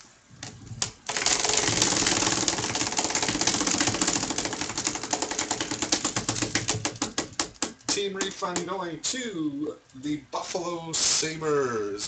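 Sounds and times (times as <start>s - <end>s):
prize wheel ticking: 1.1s - 7.0s.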